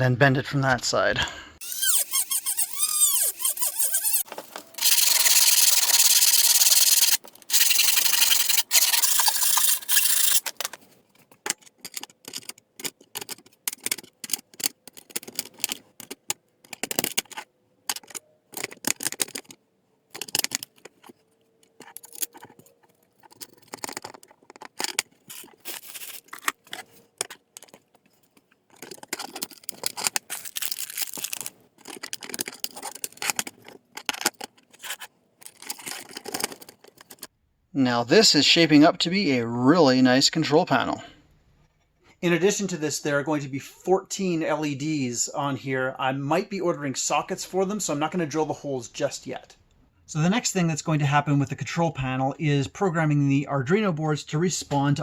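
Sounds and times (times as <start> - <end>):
sheet metal scraping: 1.6 - 10.8.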